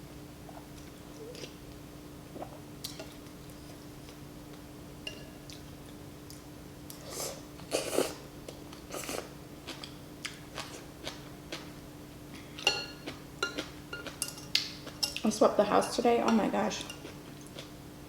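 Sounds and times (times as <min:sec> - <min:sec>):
person chewing noodle soup: 0:05.4 - 0:15.2, 0:17.0 - 0:17.7.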